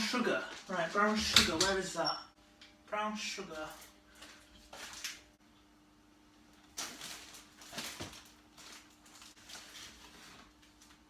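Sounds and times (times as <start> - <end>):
rummaging through kitchen cupboards: 0.5 - 2.3.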